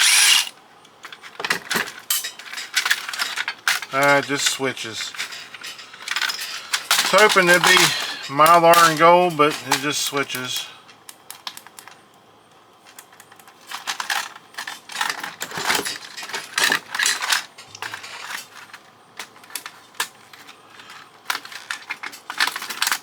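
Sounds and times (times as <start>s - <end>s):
small machine parts clattering: 0.0s - 0.5s, 19.4s - 23.0s.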